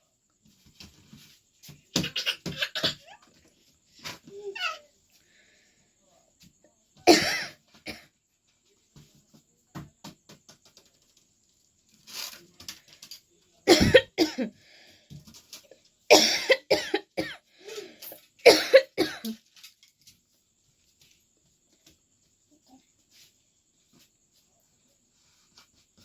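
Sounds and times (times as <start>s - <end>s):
person coughing: 7.1s - 8.0s, 13.7s - 14.5s, 16.1s - 19.4s.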